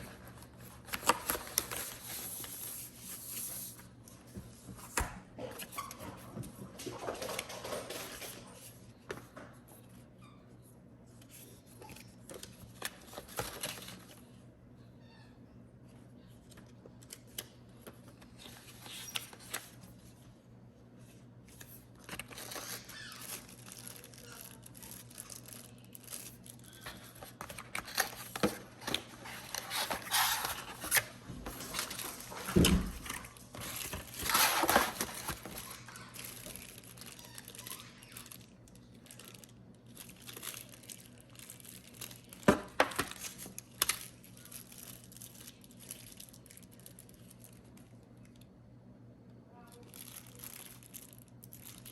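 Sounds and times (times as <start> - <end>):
wrapping crinkling and tearing: 0.0 - 4.0, 21.0 - 48.5, 49.6 - 51.9.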